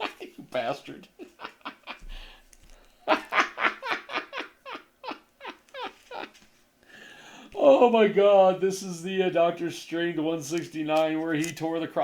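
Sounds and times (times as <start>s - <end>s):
man laughing: 0.0s - 2.3s, 3.0s - 6.4s
soft rustle: 5.7s - 6.8s.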